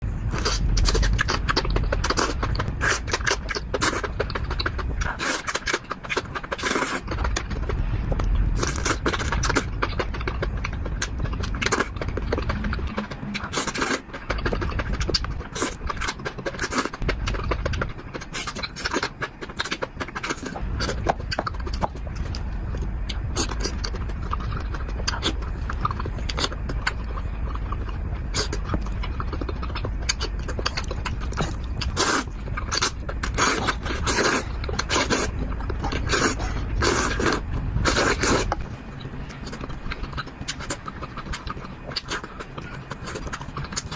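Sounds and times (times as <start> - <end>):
low rumble: 0.0 - 43.9
chewing clicks and crackles: 0.2 - 43.9.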